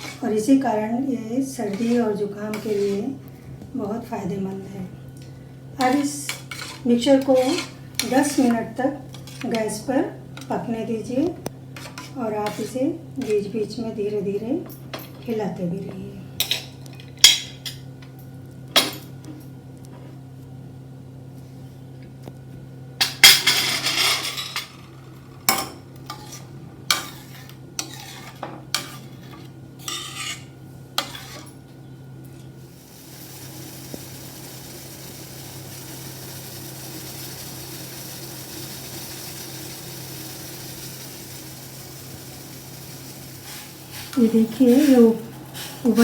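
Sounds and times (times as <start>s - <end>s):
liquid boiling hiss: 32.6s - 46.0s.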